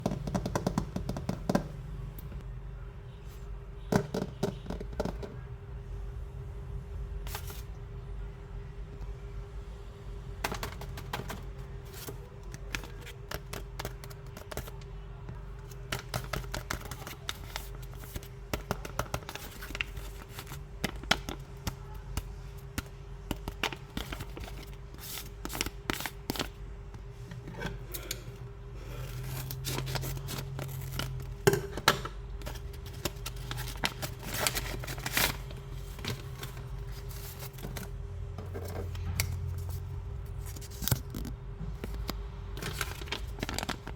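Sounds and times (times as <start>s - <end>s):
faint steady hum: 0.0s - 43.9s
packaging crackling and clicking: 32.4s - 38.0s, 40.5s - 43.9s.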